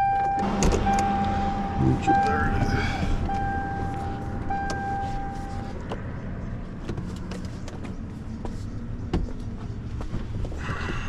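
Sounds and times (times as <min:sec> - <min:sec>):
truck engine idling: 0:00.0 - 0:06.4
steady tone: 0:00.3 - 0:05.7.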